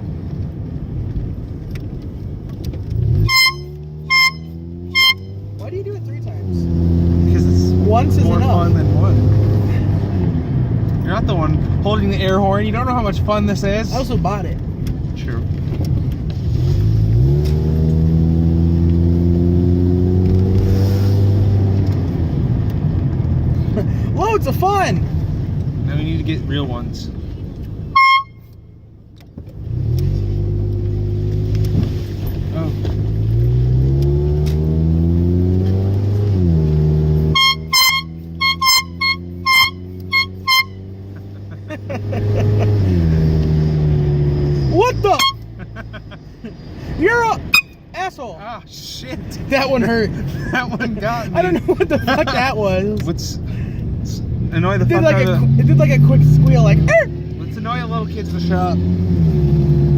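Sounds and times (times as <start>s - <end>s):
car engine accelerating: 0.0s - 47.9s, 49.0s - 59.9s
canned air horn toots: 3.2s - 5.5s, 27.9s - 28.6s, 37.3s - 41.0s, 45.1s - 45.5s.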